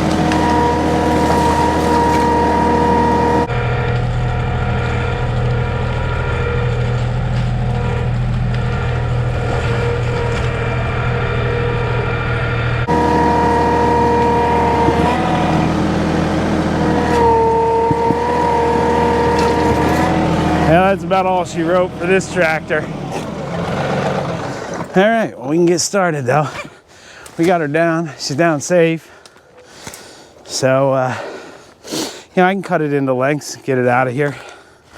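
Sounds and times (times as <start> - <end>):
steady whine: 0.0 - 25.1
tractor diesel engine running: 0.0 - 25.1.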